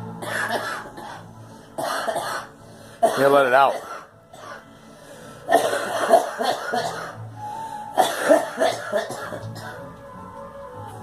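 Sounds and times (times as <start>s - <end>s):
girl coughing: 0.2s - 1.2s, 1.8s - 4.6s, 5.5s - 7.2s, 8.0s - 9.8s.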